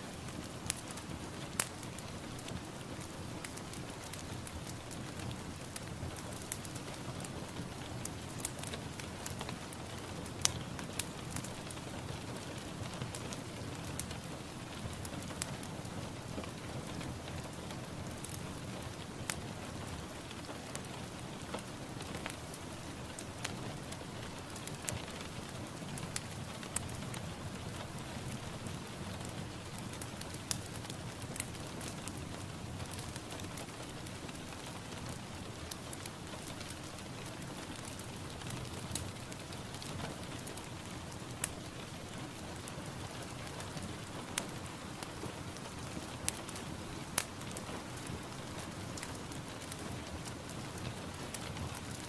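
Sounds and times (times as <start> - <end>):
steady rainfall: 0.0 - 52.0.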